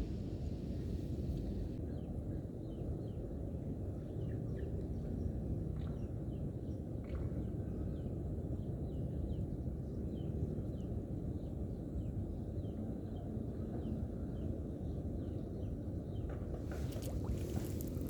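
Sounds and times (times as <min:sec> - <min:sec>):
steady low rumble: 0:00.0 - 0:01.8.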